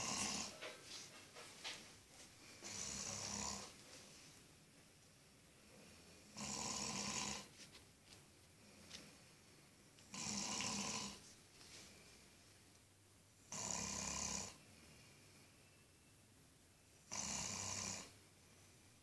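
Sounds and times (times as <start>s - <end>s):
pig snoring: 0.0s - 0.6s, 2.6s - 3.8s, 6.3s - 7.5s, 10.1s - 11.2s, 13.5s - 14.6s, 17.1s - 18.2s.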